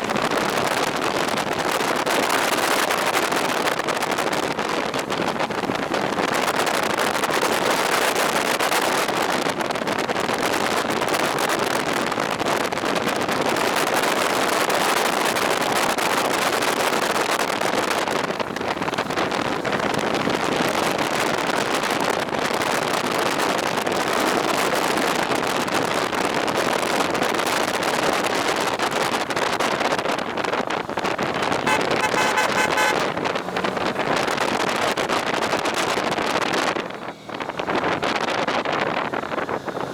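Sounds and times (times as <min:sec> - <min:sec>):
wind noise on microphone: 0:00.0 - 0:39.9
short pitched tone: 0:31.7 - 0:33.1.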